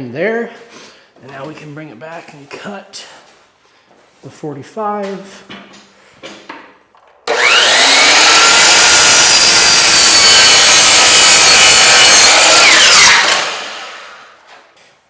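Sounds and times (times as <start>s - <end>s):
power saw cutting wood: 7.3s - 14.5s.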